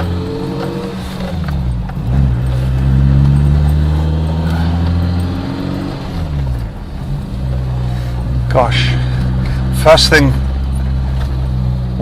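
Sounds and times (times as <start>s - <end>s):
car engine accelerating: 0.0s - 12.0s.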